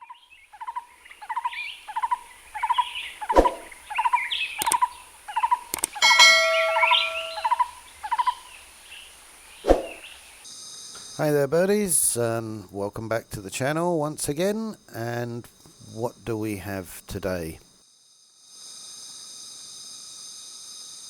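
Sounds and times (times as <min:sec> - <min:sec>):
bird calling: 0:00.6 - 0:08.4
held chime: 0:06.0 - 0:07.7.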